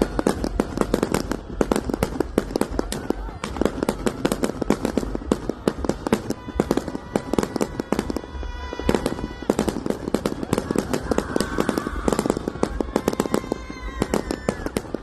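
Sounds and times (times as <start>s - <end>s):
fireworks popping and banging: 0.0s - 15.0s
whistling fireworks: 0.0s - 15.0s.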